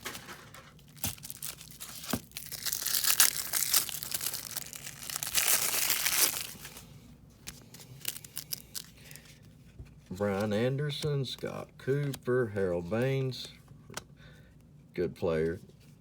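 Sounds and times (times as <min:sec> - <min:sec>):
plastic wrapper crinkling and tearing: 0:00.0 - 0:06.9, 0:07.7 - 0:09.2.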